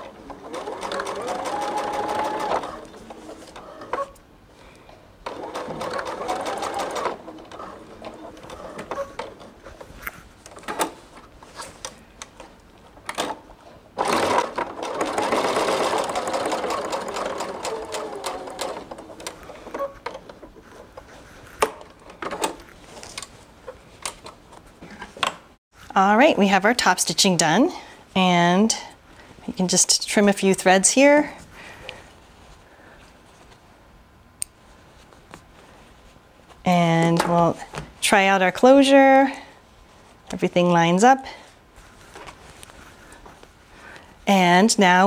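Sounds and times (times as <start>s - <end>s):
sewing machine stitching: 0.0s - 4.2s, 5.2s - 9.6s, 14.0s - 20.5s.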